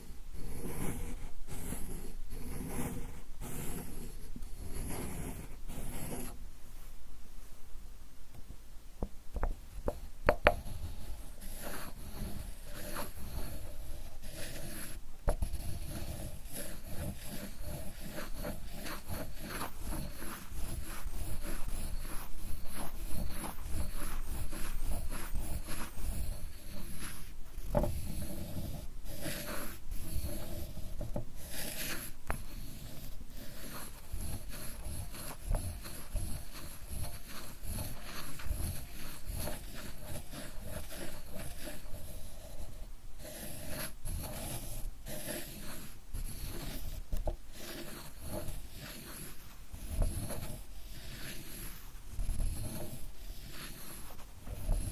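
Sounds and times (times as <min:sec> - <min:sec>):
ink stick rubbing on inkstone: 0:00.0 - 0:06.5, 0:09.0 - 0:54.9.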